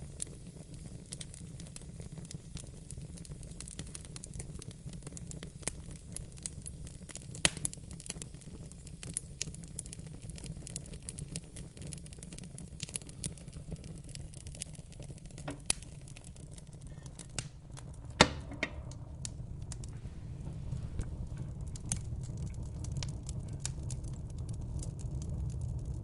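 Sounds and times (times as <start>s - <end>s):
wood fire crackling and popping: 0.0s - 26.0s
low steady rumble: 13.0s - 26.0s.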